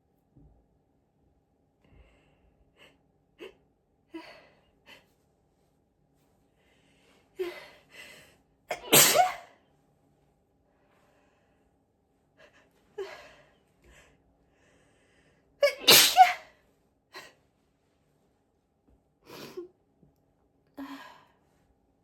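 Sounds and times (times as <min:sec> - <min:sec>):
high-pitched sneezes: 0:08.7 - 0:09.5, 0:15.6 - 0:16.6.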